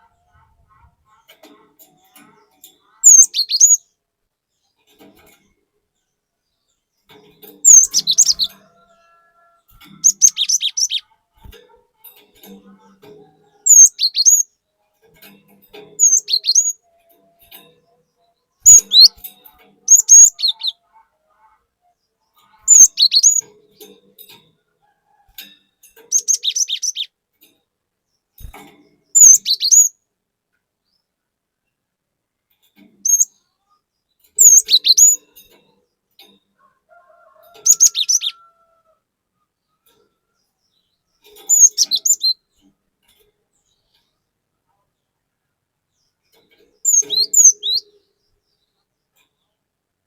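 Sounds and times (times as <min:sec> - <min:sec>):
bird chirping high notes: 0:03.0 - 0:03.8, 0:07.6 - 0:11.1, 0:13.6 - 0:14.5, 0:16.0 - 0:16.8, 0:18.6 - 0:19.3, 0:19.9 - 0:20.8, 0:22.7 - 0:23.4, 0:41.5 - 0:42.4, 0:46.8 - 0:48.0.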